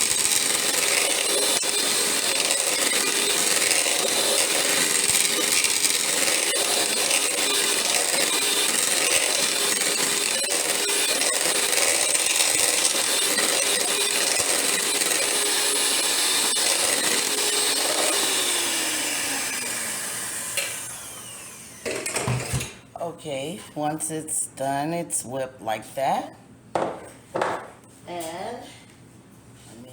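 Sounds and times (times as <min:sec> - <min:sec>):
electric hand mixer running: 0:00.0 - 0:22.7.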